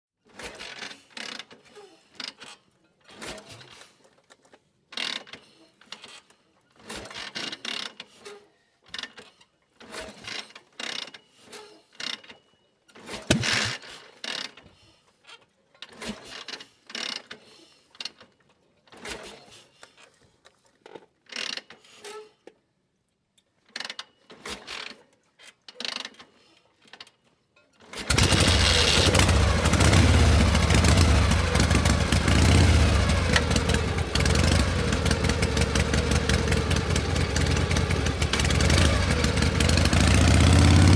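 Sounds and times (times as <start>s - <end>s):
short irregular sounds: 13.1s - 14.0s
motorcycle engine running: 28.1s - 40.9s.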